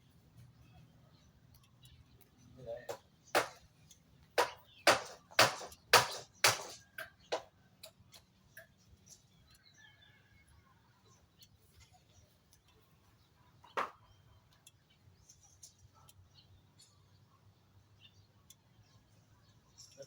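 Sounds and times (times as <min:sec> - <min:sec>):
hammer blows on wood: 0:02.9 - 0:03.6, 0:04.4 - 0:07.5.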